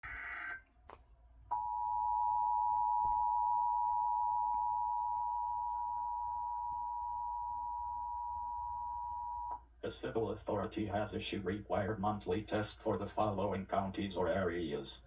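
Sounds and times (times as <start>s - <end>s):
digital data tones: 0.0s - 0.6s.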